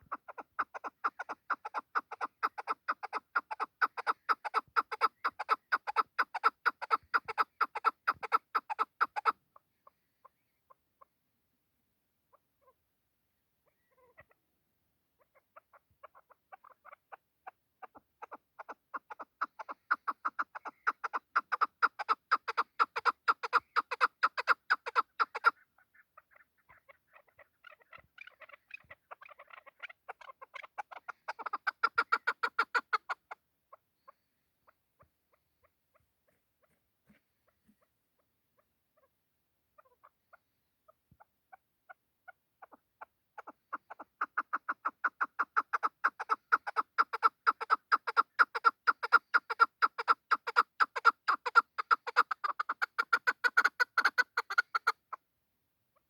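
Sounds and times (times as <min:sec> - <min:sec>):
partridge clucking call: 0:00.0 - 0:09.4, 0:15.2 - 0:33.4, 0:41.9 - 0:55.2.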